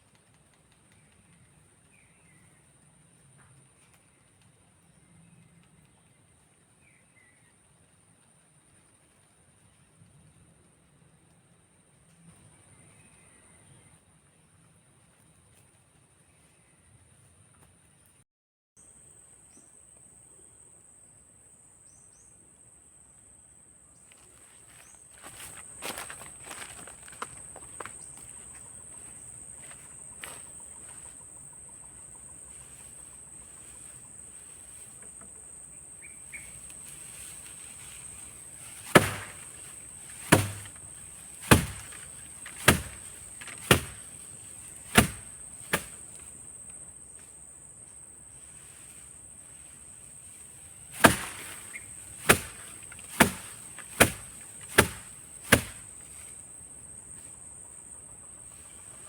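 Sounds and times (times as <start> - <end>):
high insect drone: 18.8 - 59.0
tool chopping blows: 37.4 - 46.3, 50.9 - 56.3.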